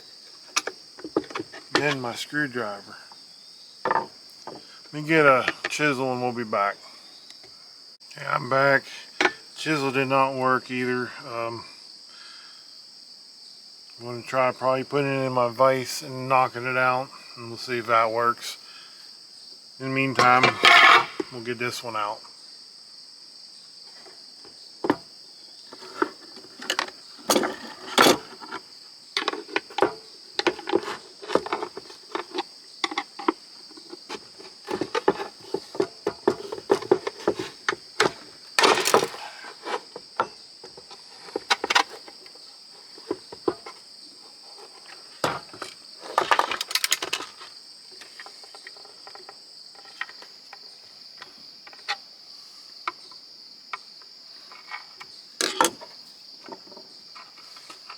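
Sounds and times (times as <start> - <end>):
hand tools clicking and scraping: 0.0 - 2.8, 3.9 - 4.7, 5.3 - 5.8, 9.1 - 9.5, 20.2 - 21.4, 25.7 - 43.8, 44.4 - 50.3, 54.5 - 57.9
cricket trill: 0.0 - 57.9.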